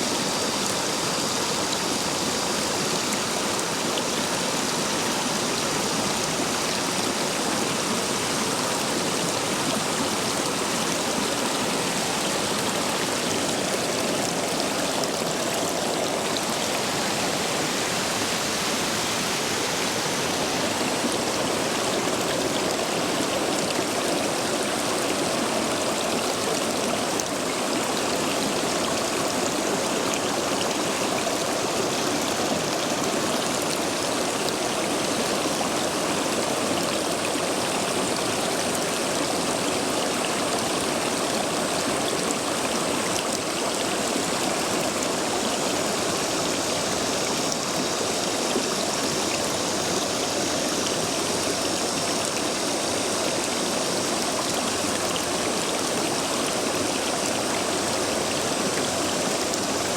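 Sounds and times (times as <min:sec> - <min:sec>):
stream water rushing over stones: 0:00.0 - 0:59.9.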